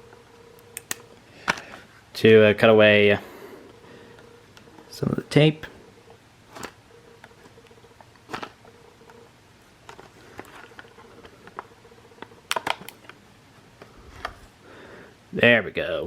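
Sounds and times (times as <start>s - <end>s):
faint steady hum: 0.0s - 16.0s
plastic and card crackling: 6.5s - 9.2s, 9.8s - 13.2s.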